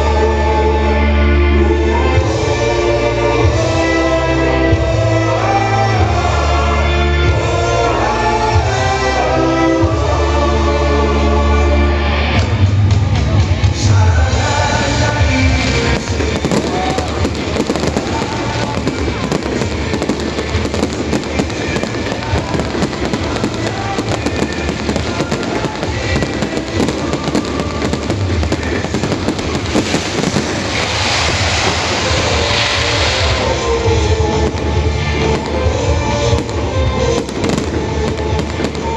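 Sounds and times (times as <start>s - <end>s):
music: 0.0s - 38.9s
fireworks banging and crackling: 14.3s - 38.9s.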